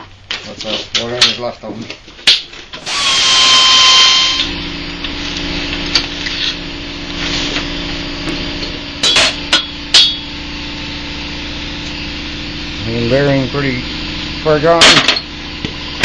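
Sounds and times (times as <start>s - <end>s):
power tool whirring: 2.8s - 5.1s.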